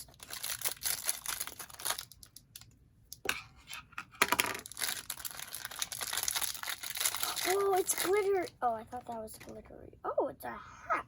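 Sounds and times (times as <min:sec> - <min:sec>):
plastic bag crinkling: 0:00.0 - 0:02.7, 0:04.2 - 0:09.6.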